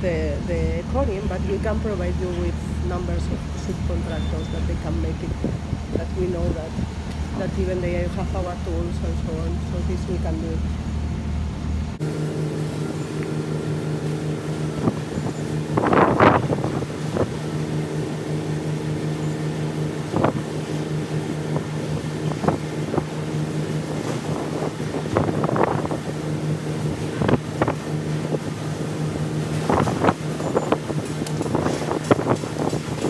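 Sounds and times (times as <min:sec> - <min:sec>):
mechanical drone: 0:00.0 - 0:33.0.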